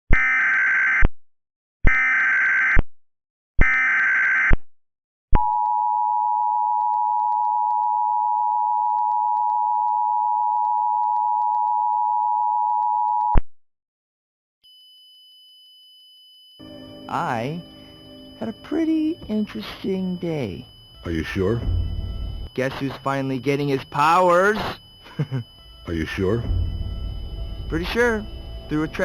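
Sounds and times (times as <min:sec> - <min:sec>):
two-tone attention signal: 0:16.6 - 0:29.0
buzzy digital data bursts: 0:17.2 - 0:29.0.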